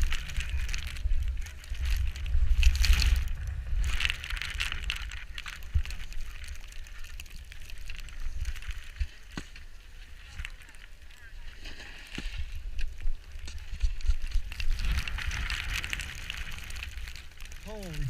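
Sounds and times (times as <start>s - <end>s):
wind buffeting microphone: 0.0s - 6.6s
skis scraping on snow: 11.2s - 18.0s.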